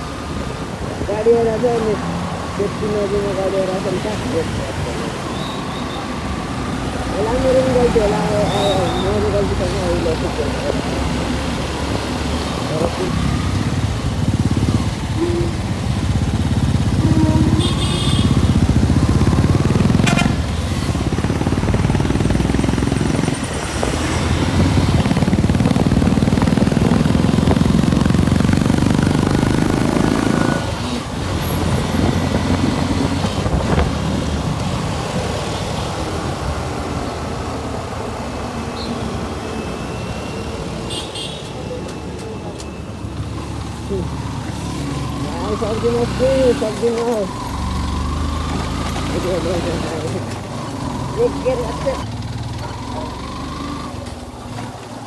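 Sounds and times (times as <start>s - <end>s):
motorcycle engine rumble: 0.0s - 39.5s, 40.6s - 55.0s
wind on microphone: 31.6s - 35.4s.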